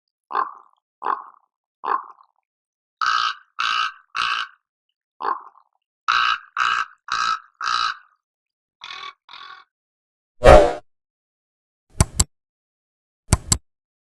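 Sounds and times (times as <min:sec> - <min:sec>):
crow cawing: 0:03.0 - 0:04.6, 0:06.1 - 0:08.2, 0:08.8 - 0:09.6.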